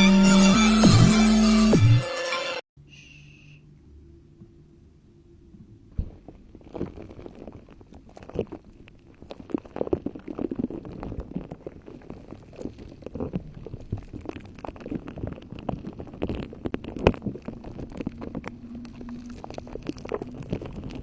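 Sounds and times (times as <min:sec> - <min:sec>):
wet slime squelches: 0:06.0 - 0:21.0.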